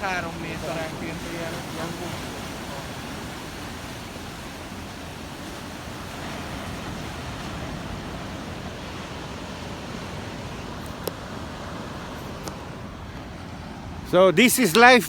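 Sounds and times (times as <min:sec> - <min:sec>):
ocean waves breaking: 0:00.0 - 0:15.0.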